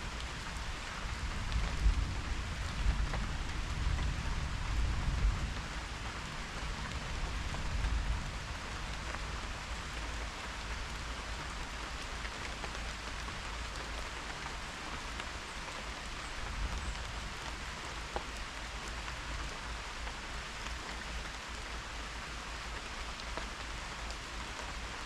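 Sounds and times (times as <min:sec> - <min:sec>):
heavy rain falling: 0:00.0 - 0:25.0.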